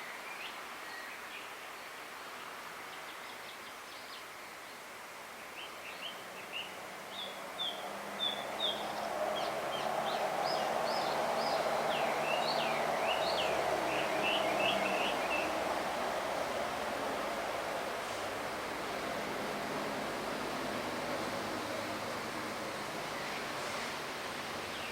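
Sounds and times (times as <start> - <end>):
bird singing whistled notes: 9.4 - 15.5.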